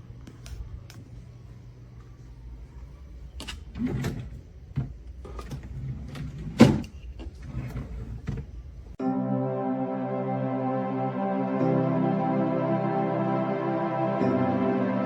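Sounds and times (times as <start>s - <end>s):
steady low hum: 0.0s - 15.0s
music: 9.0s - 15.0s.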